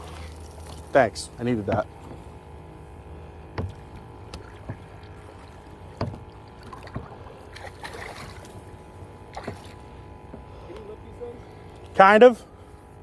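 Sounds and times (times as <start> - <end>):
steady low hum: 0.0 - 13.0
sharp knocks and taps: 1.6 - 2.2, 3.6 - 4.8, 6.0 - 6.2.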